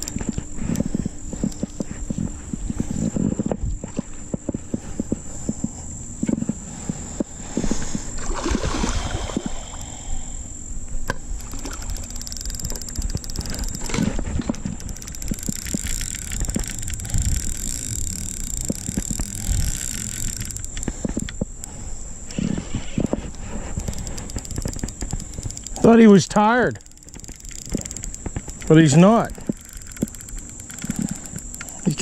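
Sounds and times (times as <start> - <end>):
fishing reel clicking: 0.0 - 3.2, 9.1 - 32.0
wind rumble on microphone: 10.9 - 32.0.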